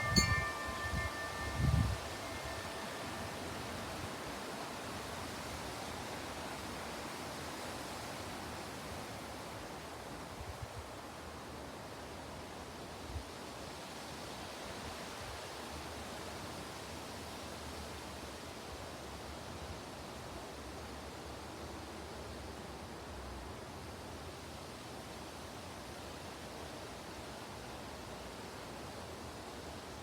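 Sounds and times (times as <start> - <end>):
breeze rustling hiss: 0.0 - 4.0.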